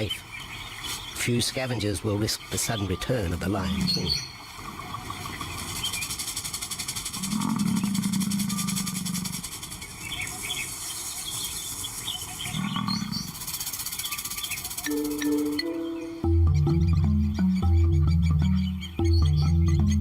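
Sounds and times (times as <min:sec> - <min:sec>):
lion calling: 0:03.0 - 0:04.4, 0:07.1 - 0:09.6, 0:12.4 - 0:13.6.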